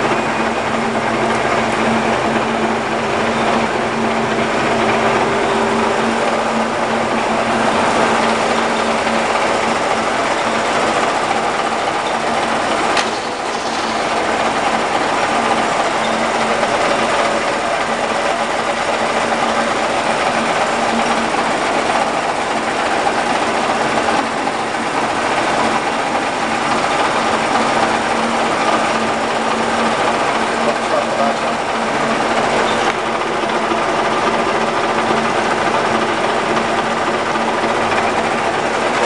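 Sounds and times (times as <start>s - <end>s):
lathe whirring: 0.0s - 39.0s.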